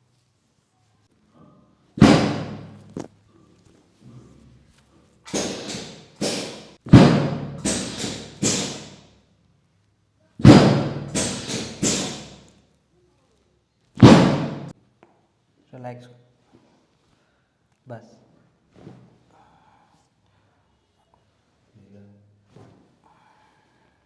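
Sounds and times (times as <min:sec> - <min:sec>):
loud thuds on treatment table: 0:02.0 - 0:03.1, 0:05.3 - 0:09.0, 0:10.4 - 0:12.4, 0:14.0 - 0:14.7.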